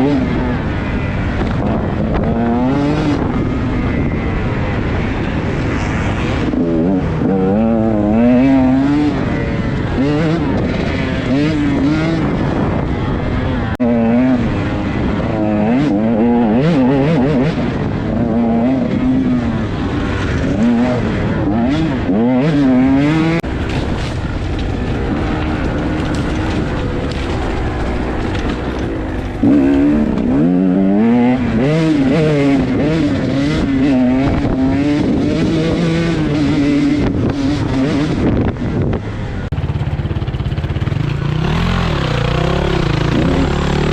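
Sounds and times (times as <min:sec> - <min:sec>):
dirt bike engine revving: 0:00.0 - 0:43.9.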